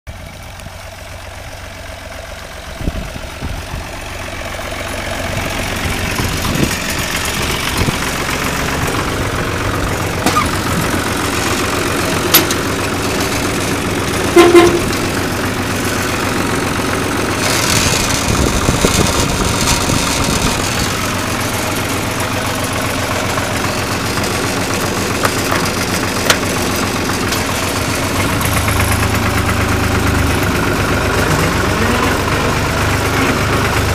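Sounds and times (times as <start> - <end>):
tractor diesel engine running: 0.1 - 33.9
short loud pitched tone: 14.3 - 14.9.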